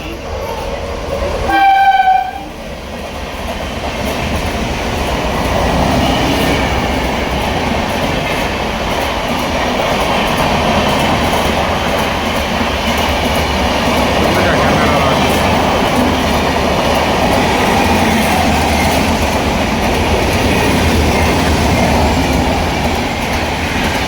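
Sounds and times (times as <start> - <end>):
train rushing and clattering past: 0.0 - 24.0
train horn blast: 1.5 - 2.6.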